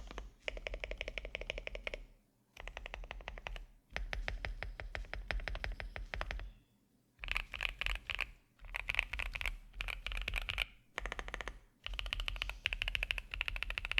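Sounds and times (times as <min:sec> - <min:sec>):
fast typing on mechanical keyboard: 0:00.0 - 0:06.4, 0:07.2 - 0:13.9.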